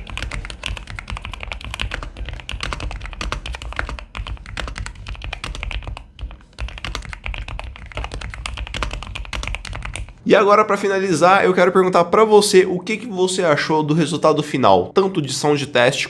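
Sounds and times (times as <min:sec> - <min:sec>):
mechanical keyboard typing: 0:00.0 - 0:10.2.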